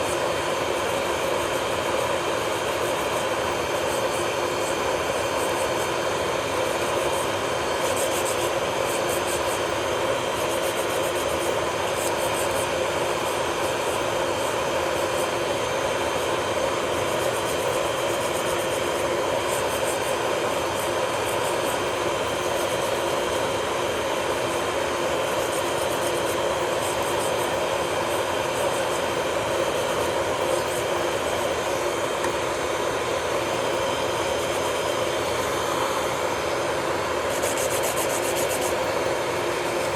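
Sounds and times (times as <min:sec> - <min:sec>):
electric nail drill whining: 0:00.0 - 0:39.9.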